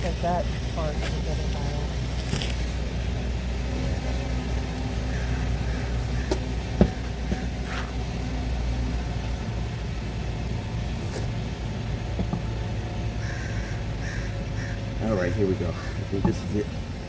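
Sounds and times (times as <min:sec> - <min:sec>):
car engine idling: 0:00.0 - 0:17.0
car jack clicks and knocks: 0:06.3 - 0:07.5, 0:12.1 - 0:12.7.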